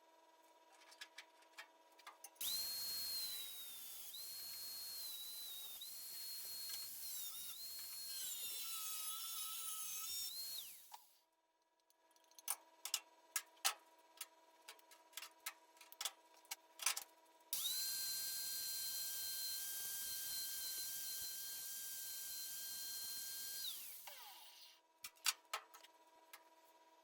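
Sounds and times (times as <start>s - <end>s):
power cutter whining: 2.4s - 11.0s, 17.6s - 24.8s.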